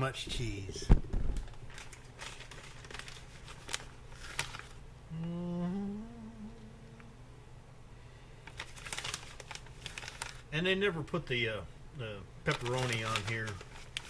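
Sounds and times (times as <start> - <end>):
man humming: 5.1 - 7.2.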